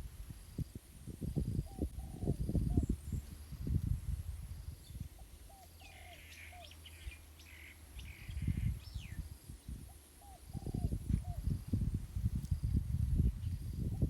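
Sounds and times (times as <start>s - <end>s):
wind gusting on microphone: 0.0s - 5.6s, 8.0s - 14.0s
birds chirping: 1.6s - 3.8s, 4.4s - 11.8s.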